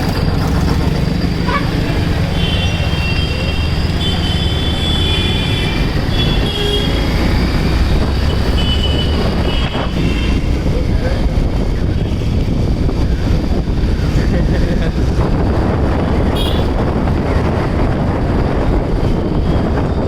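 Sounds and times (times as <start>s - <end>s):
motorcycle engine running: 0.0s - 10.9s
wind and road noise: 0.0s - 20.0s.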